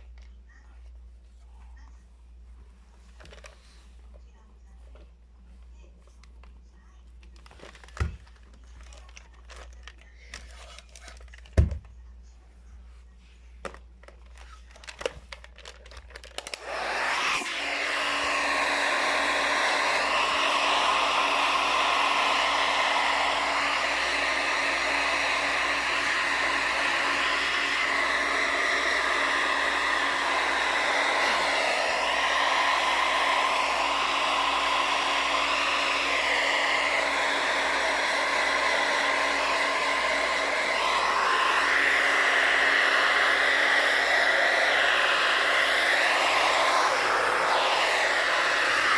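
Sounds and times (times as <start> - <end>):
hair dryer blowing: 16.2 - 48.9.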